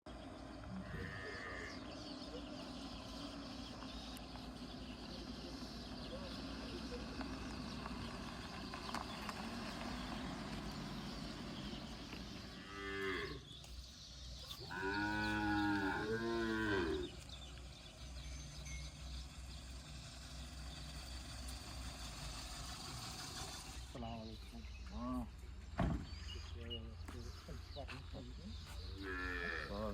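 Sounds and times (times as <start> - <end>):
cow mooing: 0.8 - 1.8, 12.6 - 13.5, 14.6 - 17.2, 29.0 - 29.9.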